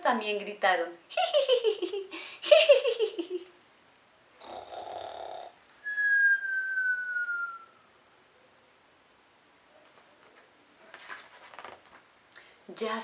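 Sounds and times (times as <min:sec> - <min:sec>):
person imitating dog snoring: 0:04.4 - 0:05.6
falling whistle: 0:05.8 - 0:07.9.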